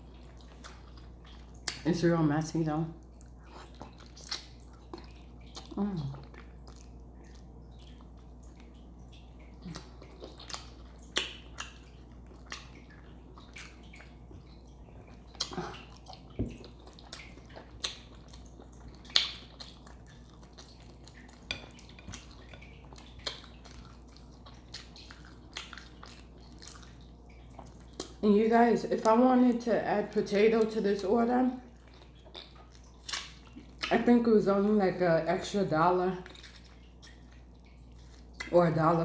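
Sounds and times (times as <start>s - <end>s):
wet chewing and lip smacks: 0.0s - 1.9s, 3.0s - 28.2s, 31.6s - 34.1s, 36.2s - 38.6s
faint low hum: 0.0s - 39.0s.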